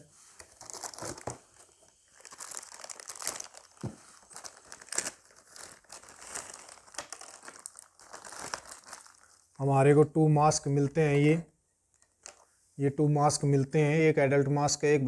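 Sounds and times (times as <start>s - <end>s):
packaging crinkling and rustling: 0.3s - 9.6s, 11.9s - 12.5s.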